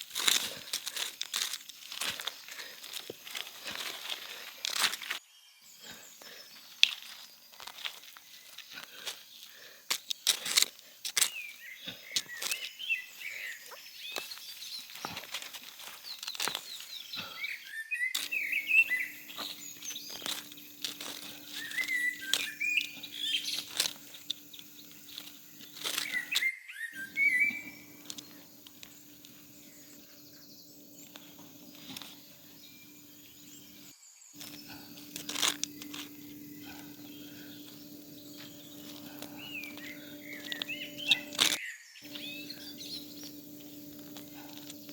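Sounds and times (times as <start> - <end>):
small birds chirping: 0.0 - 44.9
faint steady hum: 18.2 - 44.9.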